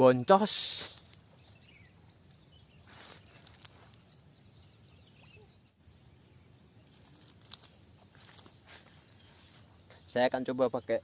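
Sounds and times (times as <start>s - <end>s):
insects chirring: 0.0s - 11.0s
small sharp clicks: 7.1s - 8.5s.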